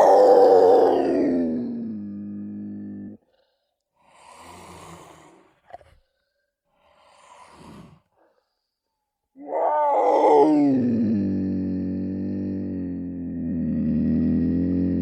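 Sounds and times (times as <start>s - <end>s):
loud roar falling in pitch: 0.0s - 2.2s, 9.4s - 15.0s.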